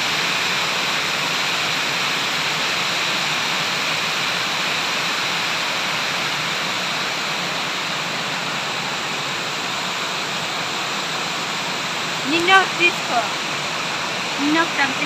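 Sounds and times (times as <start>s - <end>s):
water rushing: 0.0s - 15.0s.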